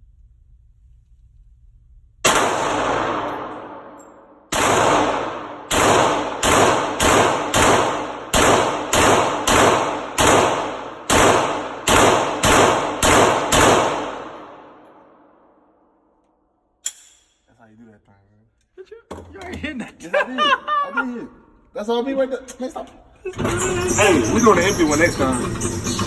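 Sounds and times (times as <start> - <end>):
gunshots echoing indoors: 2.2 - 17.3.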